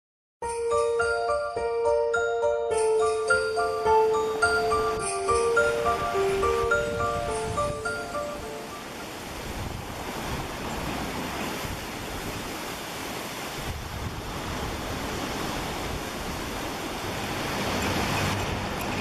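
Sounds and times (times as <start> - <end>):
waterfall rushing: 2.9 - 19.0
surf: 3.1 - 19.0
wind on microphone: 4.6 - 19.0.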